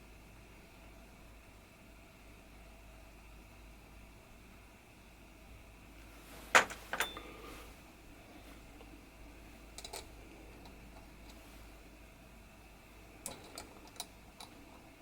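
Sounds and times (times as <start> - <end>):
sharp knocks on workbench: 6.6 - 7.1
small hard parts clicking: 9.8 - 11.4, 13.2 - 14.8.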